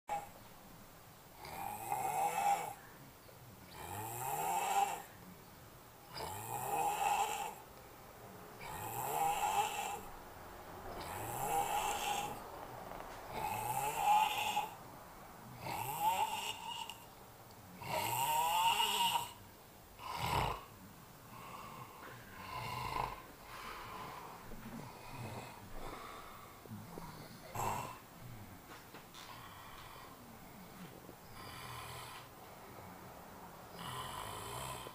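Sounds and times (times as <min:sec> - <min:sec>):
person snoring: 0:01.4 - 0:02.8, 0:03.7 - 0:05.1, 0:06.1 - 0:07.6, 0:08.6 - 0:10.1, 0:10.9 - 0:12.5, 0:13.3 - 0:14.8, 0:15.5 - 0:17.1, 0:17.8 - 0:19.4, 0:20.0 - 0:20.7, 0:21.3 - 0:28.5, 0:29.2 - 0:32.9, 0:33.7 - 0:34.9
sharp snort: 0:11.0 - 0:12.5.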